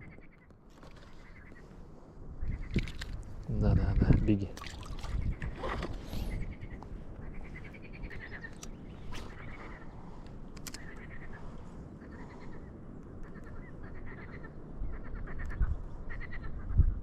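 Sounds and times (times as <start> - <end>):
wind rumble on microphone: 0.0 - 17.0
faint clicks: 10.5 - 11.1.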